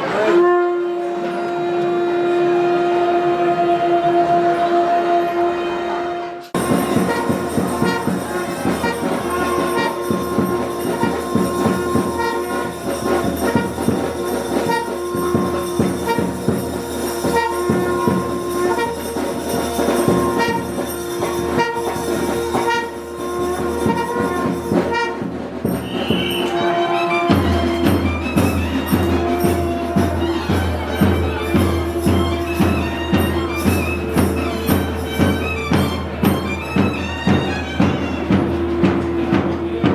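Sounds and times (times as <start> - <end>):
reed pipe melody: 0.0 - 39.9
drum strokes: 6.6 - 39.9.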